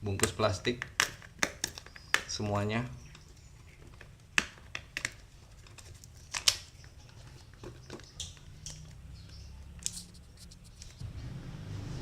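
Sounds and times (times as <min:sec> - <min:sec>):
plastic wrap snipping and crackling: 0:03.7 - 0:10.1.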